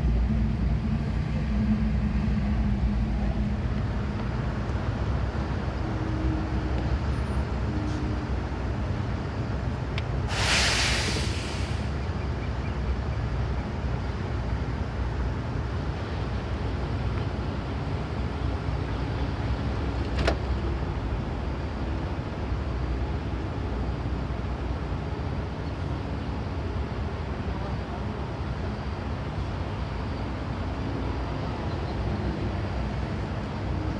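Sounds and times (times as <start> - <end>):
vehicle engines rumbling: 0.0 - 33.9
loud hiss burst: 10.3 - 11.9.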